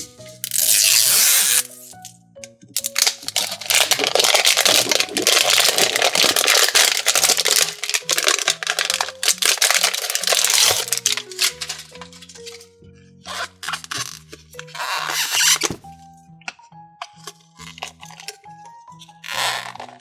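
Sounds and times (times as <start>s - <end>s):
plastic packaging crinkling and tearing: 0.0s - 2.1s, 2.8s - 12.6s, 13.3s - 15.9s, 17.2s - 18.4s
light background music: 0.0s - 20.0s.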